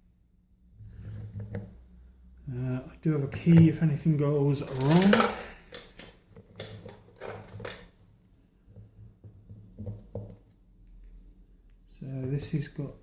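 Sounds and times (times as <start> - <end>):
lock and tools clicking: 4.6 - 7.9.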